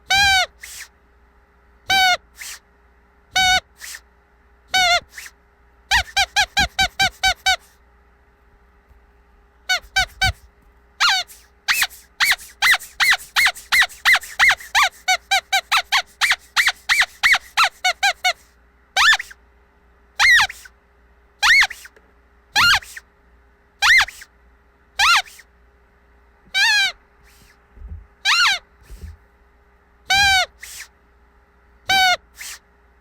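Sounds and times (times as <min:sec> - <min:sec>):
squeaky dog toy squeaking: 0:00.1 - 0:00.9, 0:01.9 - 0:02.6, 0:03.3 - 0:04.0, 0:04.7 - 0:07.8, 0:09.7 - 0:10.4, 0:11.0 - 0:19.4, 0:20.2 - 0:20.7, 0:21.4 - 0:21.9, 0:22.6 - 0:23.0, 0:23.8 - 0:24.3, 0:25.0 - 0:25.5, 0:26.5 - 0:27.5, 0:28.2 - 0:29.2, 0:30.1 - 0:30.9, 0:31.9 - 0:32.6.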